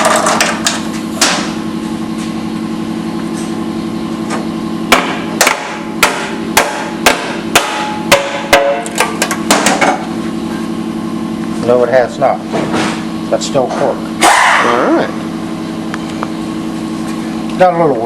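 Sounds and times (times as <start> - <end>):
low machine hum: 0.0 - 18.0
hammer tapping on metal: 4.9 - 9.8.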